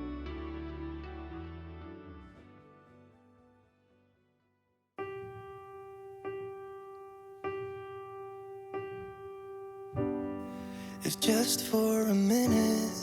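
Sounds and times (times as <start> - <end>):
electric piano chord: 5.0 - 13.0.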